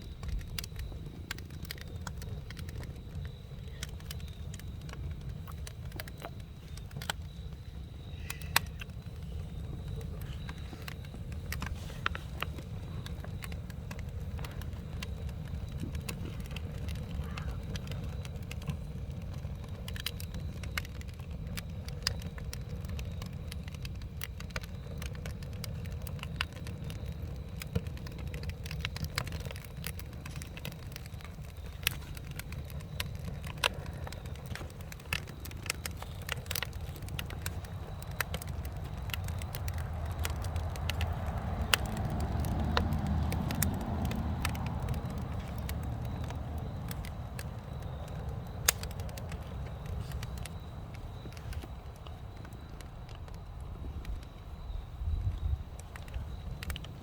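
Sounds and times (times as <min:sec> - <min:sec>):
campfire crackling and popping: 0:00.0 - 0:57.0
fire low rush: 0:00.0 - 0:57.0.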